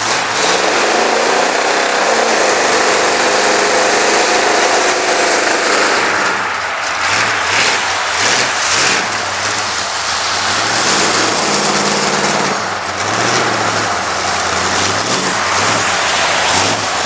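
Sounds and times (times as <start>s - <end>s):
motor vehicle engine revving: 0.0s - 17.0s.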